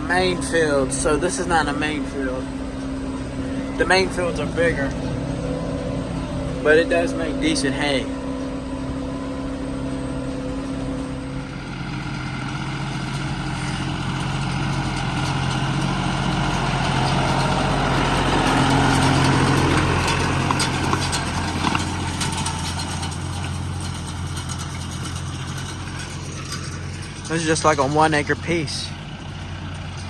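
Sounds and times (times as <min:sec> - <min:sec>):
light ticks and rattles: 0:00.0 - 0:30.0
tractor engine running: 0:00.0 - 0:30.0.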